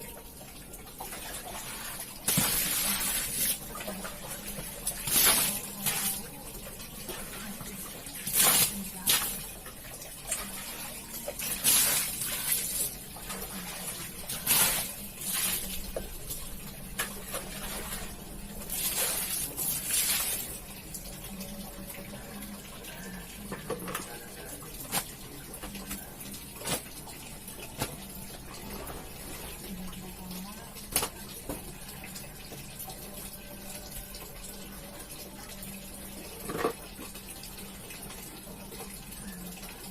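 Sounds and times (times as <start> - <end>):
water splashing and running: 0.1 - 21.6, 23.8 - 31.9.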